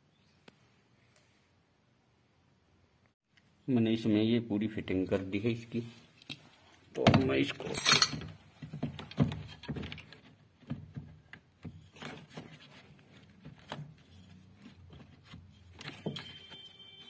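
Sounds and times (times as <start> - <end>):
metal parts knocking and rubbing: 7.6 - 10.3.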